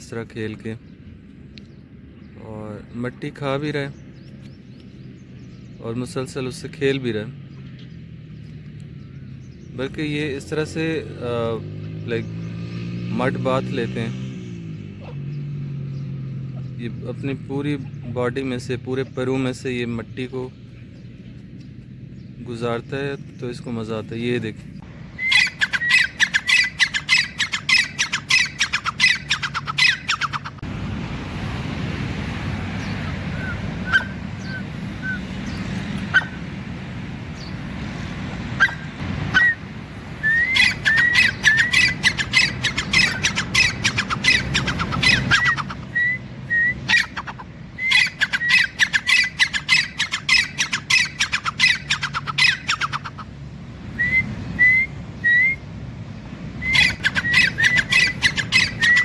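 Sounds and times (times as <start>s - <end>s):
bird squawking: 14.9s - 15.4s, 25.2s - 30.6s, 32.8s - 36.4s, 38.6s - 53.4s, 56.6s - 59.0s.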